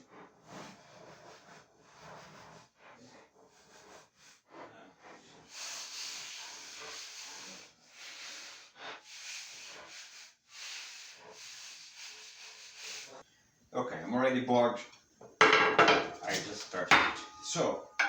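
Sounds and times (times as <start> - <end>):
hand tool rasping on wood: 0.0 - 13.2.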